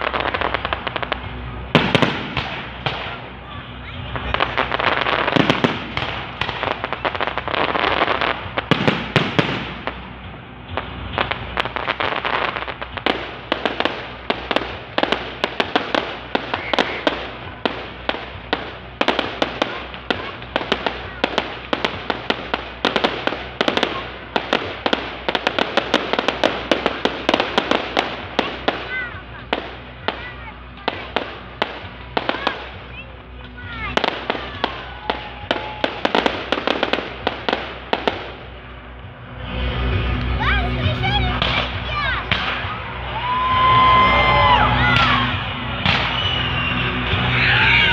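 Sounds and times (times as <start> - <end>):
fireworks crackling and banging: 0.0 - 47.9.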